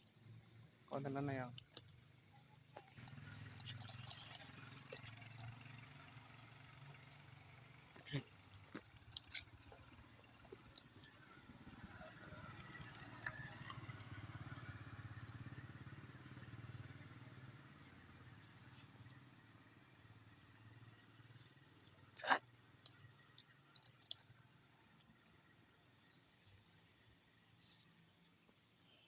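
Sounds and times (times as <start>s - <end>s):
insect chirring: 0.0s - 29.0s
low engine hum: 2.8s - 19.2s.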